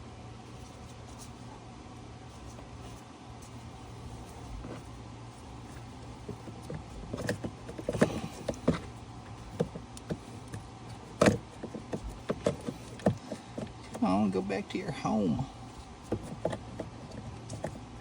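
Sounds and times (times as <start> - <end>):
faint low hum: 0.0 - 18.0
plastic clicks and knocks: 6.2 - 14.0.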